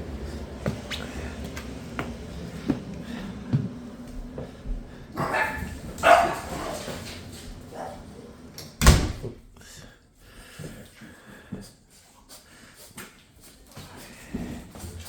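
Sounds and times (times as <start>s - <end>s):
dog barking: 5.2s - 6.9s.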